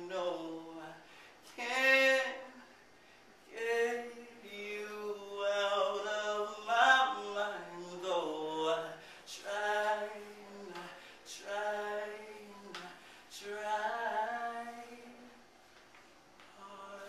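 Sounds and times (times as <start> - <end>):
person singing unaccompanied: 3.5 - 15.4.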